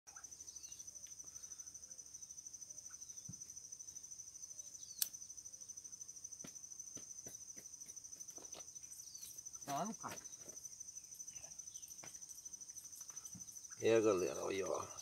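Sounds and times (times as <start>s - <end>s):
crickets trilling: 0.1s - 15.0s
sharp click: 5.0s - 5.2s.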